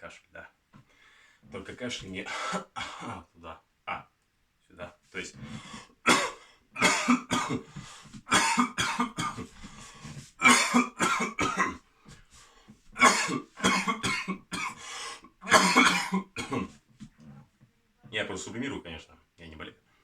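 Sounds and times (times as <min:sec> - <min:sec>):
man coughing: 0:02.3 - 0:03.3, 0:06.1 - 0:11.8, 0:13.0 - 0:16.8.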